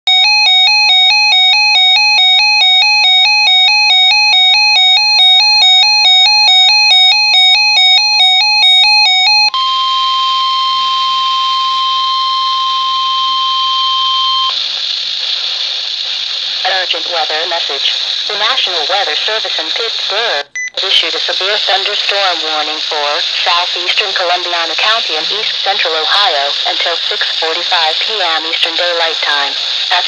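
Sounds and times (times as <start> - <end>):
steady alarm tone: 0.1 - 14.6
radio hiss: 13.6 - 30.0.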